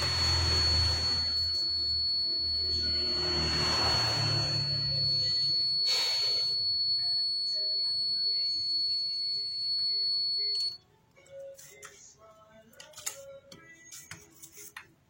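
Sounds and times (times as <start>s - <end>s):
angle grinder whining: 0.0s - 7.4s.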